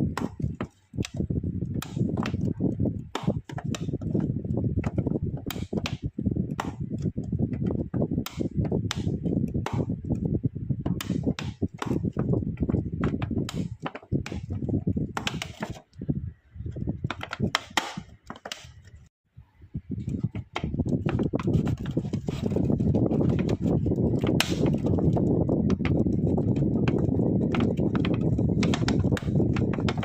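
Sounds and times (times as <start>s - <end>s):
knocking and clattering: 20.2s - 30.0s.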